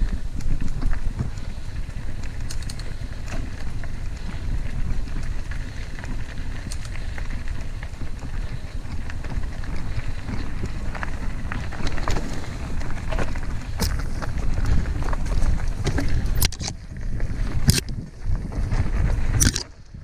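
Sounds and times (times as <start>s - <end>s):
bike clicks and rattles: 0.0s - 20.0s
wind and tyres rumble: 0.0s - 20.0s.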